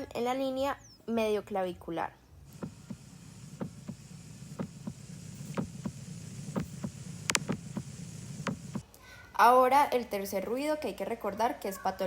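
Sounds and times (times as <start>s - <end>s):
low steady hum: 0.0s - 8.8s
heartbeat lub-dub: 2.5s - 8.8s
sharp click: 2.5s - 8.8s.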